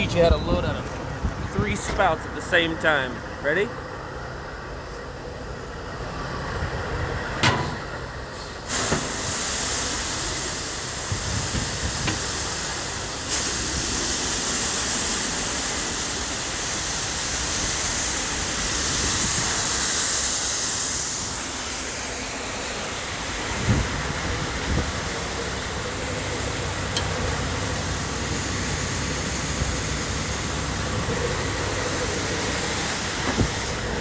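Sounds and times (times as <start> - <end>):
grain pouring hiss: 7.8 - 34.0.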